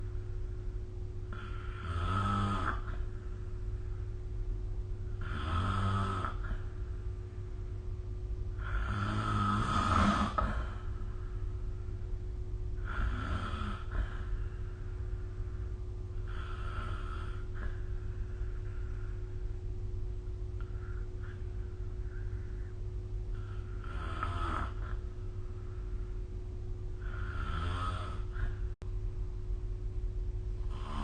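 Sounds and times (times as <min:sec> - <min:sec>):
steady low hum: 0:00.0 - 0:31.0
person snoring: 0:01.3 - 0:03.1, 0:05.2 - 0:06.7, 0:08.6 - 0:11.0, 0:12.8 - 0:14.4, 0:16.2 - 0:17.8, 0:23.3 - 0:25.0, 0:27.0 - 0:28.6, 0:30.6 - 0:31.0.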